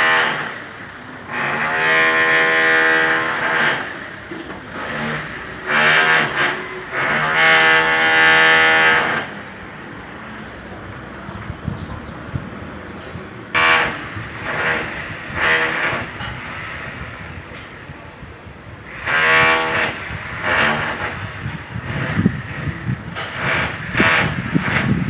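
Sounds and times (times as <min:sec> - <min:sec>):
rotary hammer chiselling concrete: 0:00.0 - 0:09.4, 0:13.6 - 0:17.3, 0:18.9 - 0:25.0.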